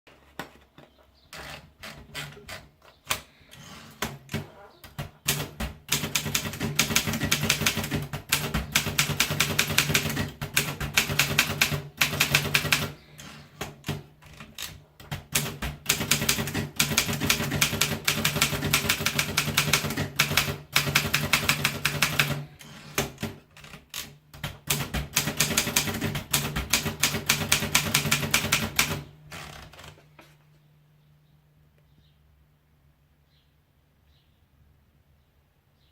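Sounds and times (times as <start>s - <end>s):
typewriter keystrokes: 4.0s - 29.1s.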